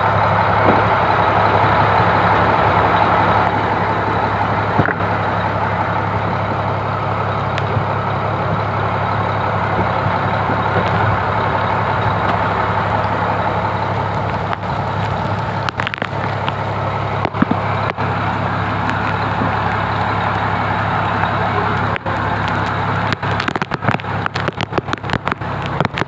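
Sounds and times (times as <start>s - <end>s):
boat engine humming: 0.0s - 26.0s.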